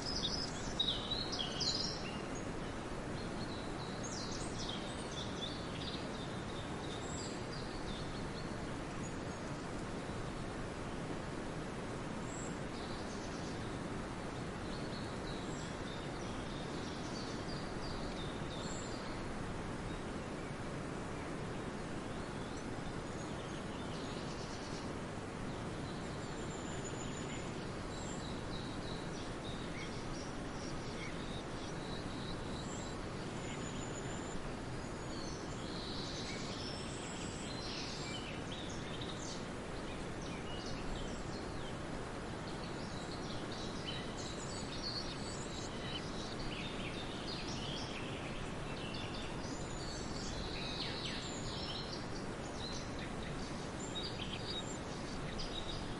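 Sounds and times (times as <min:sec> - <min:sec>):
steady background hiss: 0:00.0 - 0:55.9
small birds chirping: 0:21.3 - 0:55.9.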